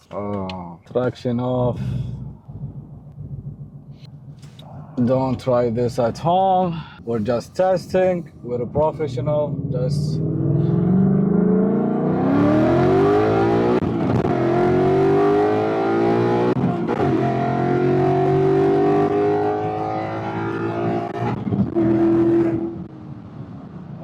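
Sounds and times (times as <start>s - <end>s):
car engine accelerating hard: 9.4s - 23.8s.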